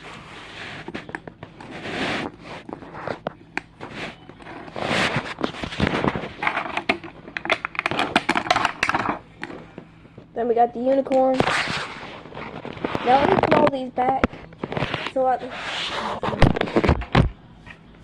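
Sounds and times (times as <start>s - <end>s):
plastic packaging crinkling: 0.2s - 9.9s, 11.3s - 15.2s
plastic pieces clicking: 6.4s - 9.6s.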